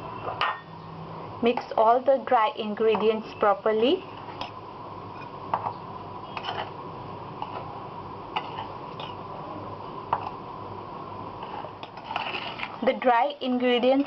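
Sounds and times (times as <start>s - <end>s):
utensil scraping in a bowl: 11.4s - 12.8s.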